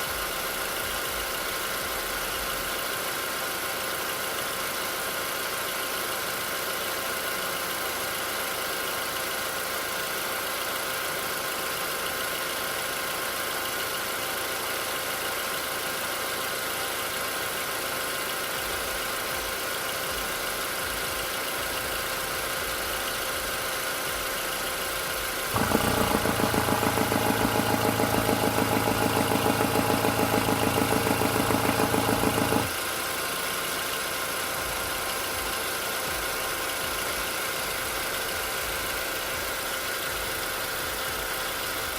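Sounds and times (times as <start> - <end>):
car engine idling: 0.0 - 41.9
knocking near turbocharger: 25.5 - 32.8.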